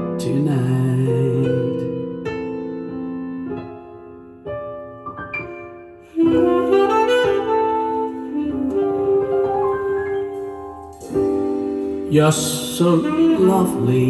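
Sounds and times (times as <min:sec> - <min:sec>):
soft piano notes: 0:00.0 - 0:14.0
held melody line: 0:04.5 - 0:14.0.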